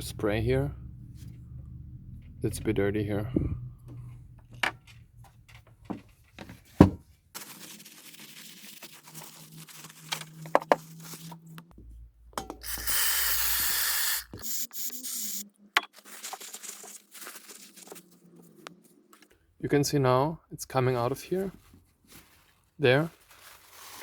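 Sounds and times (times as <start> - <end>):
aerosol spray hissing: 12.6 - 15.4.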